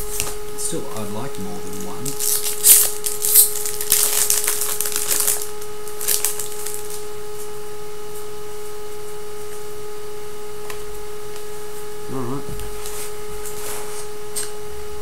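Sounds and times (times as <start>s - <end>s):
high-pitched electrical hum: 0.0s - 15.0s
card wrappers rustling: 1.0s - 7.1s.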